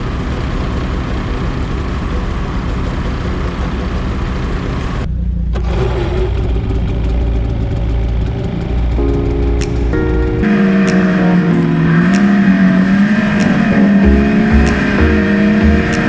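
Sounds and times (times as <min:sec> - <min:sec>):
snowmobile engines idling: 0:00.0 - 0:05.0.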